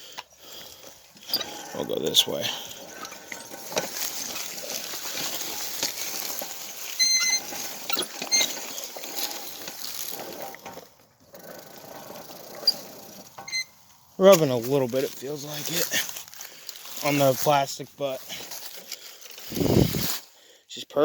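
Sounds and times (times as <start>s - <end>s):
pedal car wheels crunching on gravel: 0.0s - 20.4s
high squeaks: 1.2s - 10.6s, 11.3s - 13.8s.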